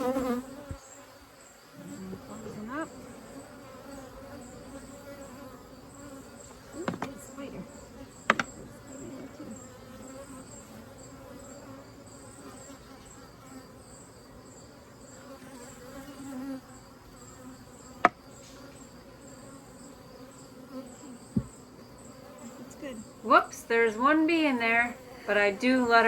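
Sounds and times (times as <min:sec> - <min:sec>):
bees buzzing: 0:00.0 - 0:26.0
sharp knocks: 0:06.8 - 0:07.2, 0:08.3 - 0:08.7, 0:18.0 - 0:18.2, 0:21.3 - 0:21.6.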